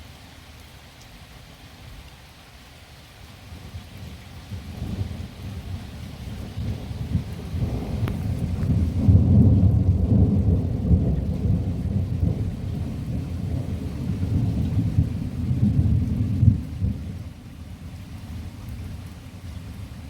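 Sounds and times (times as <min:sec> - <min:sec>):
rain falling: 0:00.0 - 0:20.0
rolling thunder: 0:04.7 - 0:17.2.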